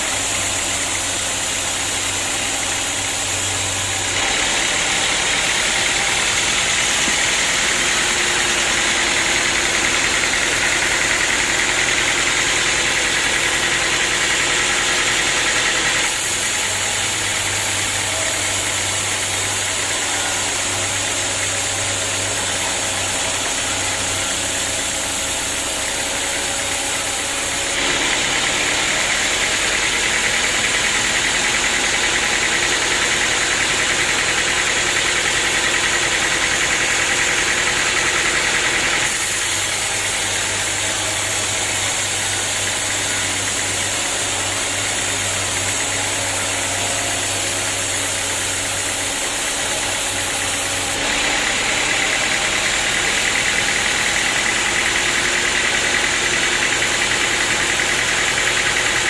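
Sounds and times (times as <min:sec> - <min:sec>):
sawmill machinery hum: 0:00.0 - 0:59.0
machinery hiss: 0:39.0 - 0:52.0.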